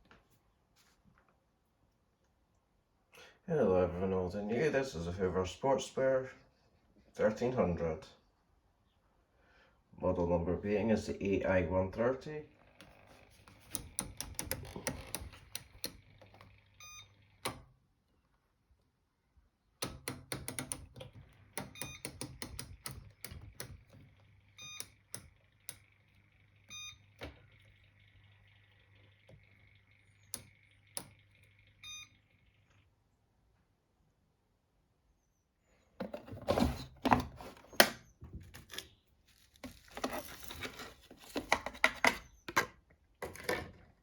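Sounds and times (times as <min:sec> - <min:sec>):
programme dial clicking: 0:12.8 - 0:17.6, 0:19.8 - 0:26.0, 0:26.6 - 0:28.4, 0:29.2 - 0:32.2
short electronic beeps: 0:26.7 - 0:27.0, 0:31.8 - 0:32.2.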